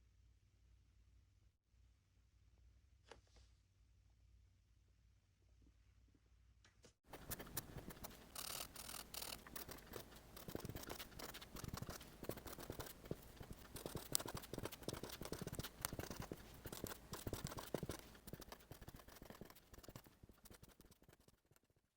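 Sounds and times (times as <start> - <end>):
stylus tapping and scratching screen: 7.1 - 21.9.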